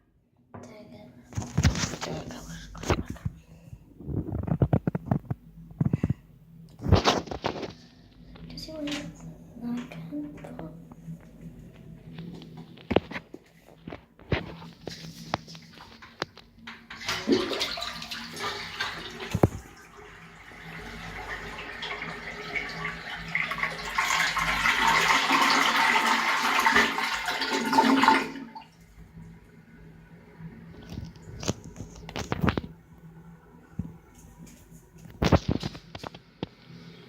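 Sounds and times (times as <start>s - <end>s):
toilet flushing water rushing: 14.8s - 28.8s.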